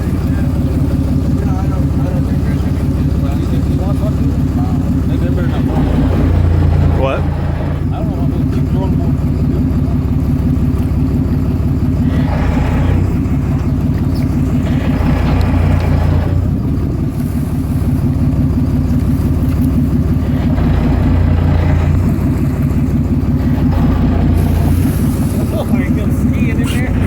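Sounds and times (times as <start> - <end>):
boat engine droning: 0.0 - 27.0
passing hiss: 24.3 - 26.2.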